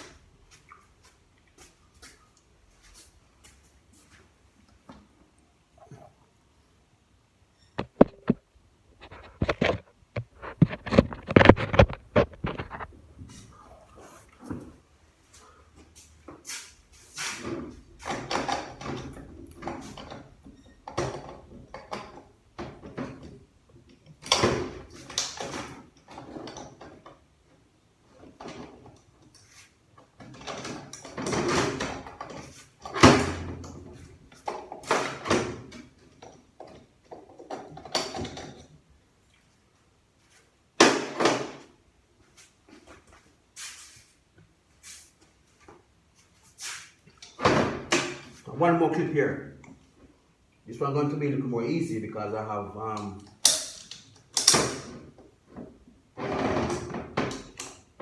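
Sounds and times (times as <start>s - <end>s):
metal tools clinking and knocking: 53.4s - 54.8s.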